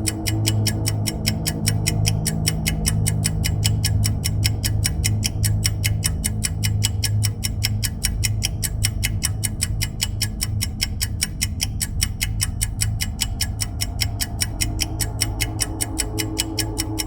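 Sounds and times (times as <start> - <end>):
low sustained drone: 0.0 - 5.6, 13.1 - 17.0
fast ticking: 0.0 - 17.0.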